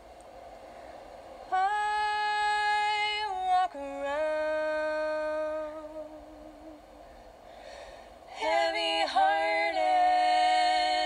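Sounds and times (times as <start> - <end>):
soft breath: 0.6 - 1.4, 6.8 - 8.4
women singing a cappella: 1.5 - 7.0, 8.3 - 11.0.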